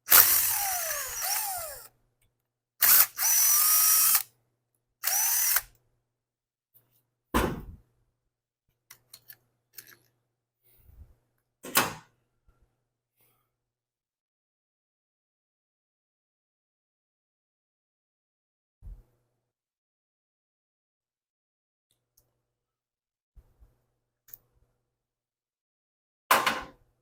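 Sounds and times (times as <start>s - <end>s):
cordless drill motor whine: 0.1s - 1.9s, 2.8s - 4.2s, 5.0s - 5.7s.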